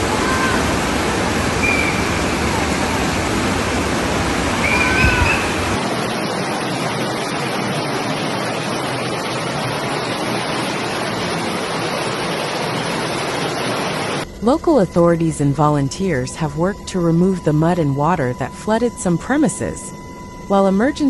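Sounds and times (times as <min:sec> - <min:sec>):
rushing stream: 0:00.0 - 0:14.2
high-pitched calls: 0:01.6 - 0:02.3, 0:04.6 - 0:05.7.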